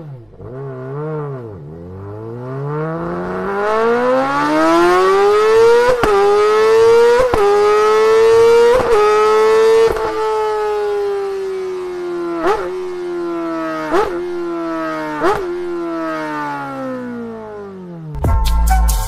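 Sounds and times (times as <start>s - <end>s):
superbike engine revving: 0.0s - 18.0s.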